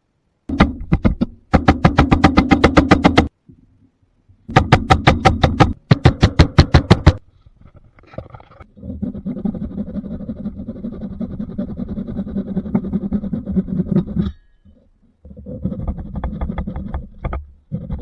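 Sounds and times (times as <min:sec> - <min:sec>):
hand tool rasping wood: 0:08.8 - 0:14.4, 0:15.2 - 0:18.0.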